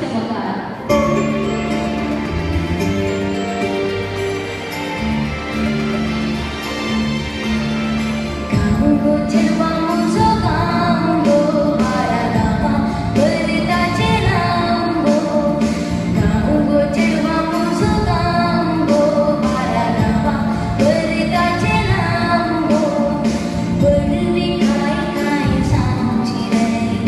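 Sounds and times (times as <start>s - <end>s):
instrumental backing with steady beat: 0.0s - 27.0s
woman singing: 8.7s - 27.0s.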